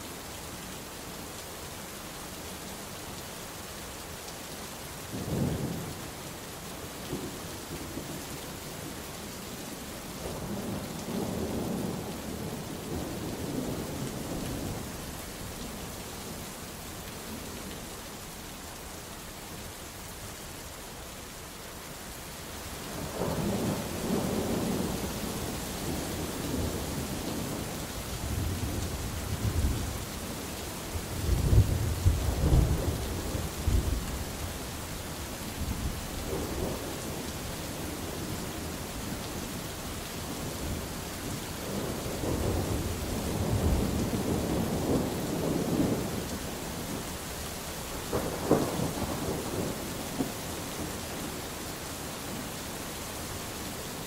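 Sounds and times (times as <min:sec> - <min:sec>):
steady rain hissing: 0:00.0 - 0:54.0
rolling thunder: 0:41.6 - 0:46.2.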